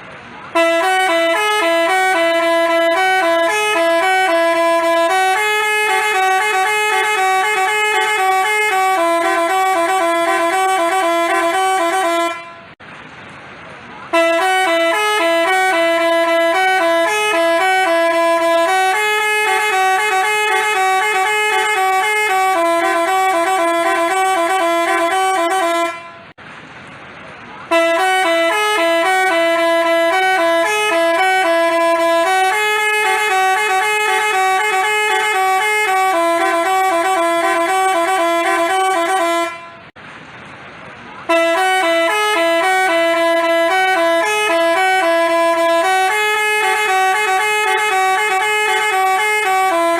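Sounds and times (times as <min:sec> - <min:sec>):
bus horn playing melody: 0:00.0 - 0:12.8, 0:14.1 - 0:26.4, 0:27.6 - 0:40.0, 0:41.2 - 0:49.9.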